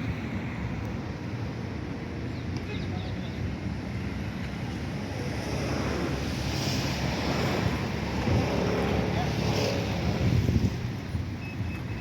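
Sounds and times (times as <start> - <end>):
wind buffeting microphone: 3.4 - 12.0.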